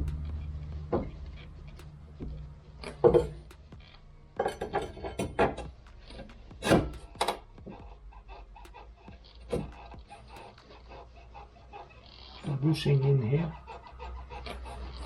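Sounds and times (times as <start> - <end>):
metal car parts clanking: 0.0 - 7.8, 8.6 - 10.8.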